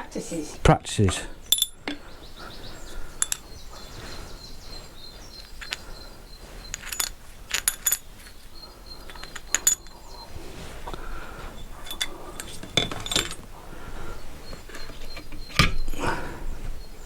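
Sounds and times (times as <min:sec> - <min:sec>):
metal parts clinking: 0:01.4 - 0:02.0, 0:03.1 - 0:03.5, 0:05.4 - 0:06.0, 0:06.6 - 0:10.2, 0:11.6 - 0:13.4.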